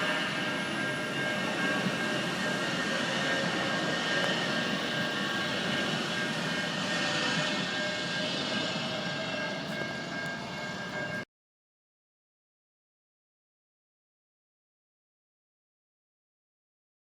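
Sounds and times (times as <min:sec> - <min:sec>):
light rail train rumble: 0:00.0 - 0:11.2.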